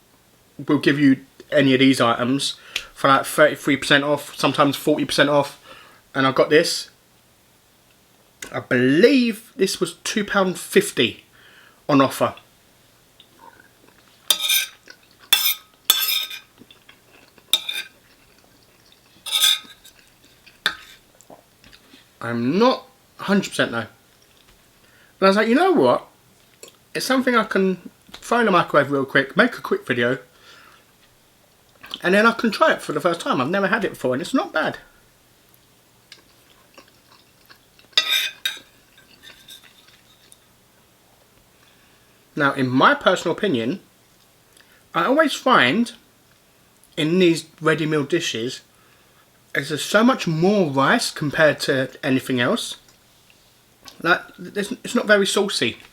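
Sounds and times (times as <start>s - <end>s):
quiet chewing: 13.2s - 15.3s, 16.5s - 22.2s, 24.1s - 24.6s, 26.3s - 26.8s, 30.7s - 32.0s, 35.5s - 40.5s
cutlery scraping through rice: 14.3s - 16.5s, 17.2s - 18.4s, 19.1s - 21.0s, 37.9s - 40.4s.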